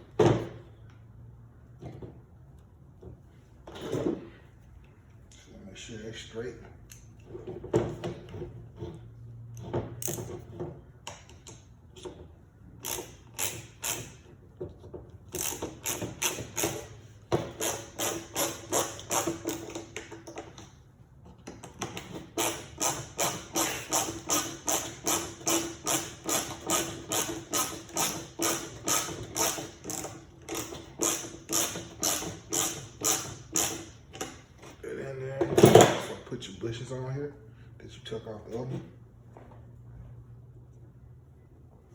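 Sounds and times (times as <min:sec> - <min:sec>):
ratcheting hand tool clicking: 0:12.8 - 0:14.3, 0:15.3 - 0:16.9, 0:21.4 - 0:34.4.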